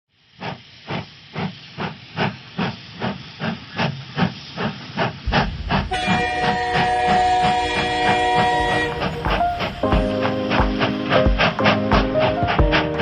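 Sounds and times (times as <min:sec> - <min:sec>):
steam locomotive chuffing: 0:00.3 - 0:13.0
music with sustained tones: 0:05.4 - 0:13.0.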